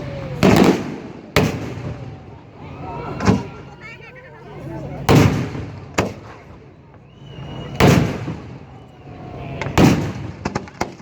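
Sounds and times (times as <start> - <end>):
fireworks bangs: 0.0 - 4.1, 5.0 - 11.0
sharp firework cracks: 0.3 - 2.2, 5.1 - 6.5, 7.8 - 8.7, 9.6 - 11.0.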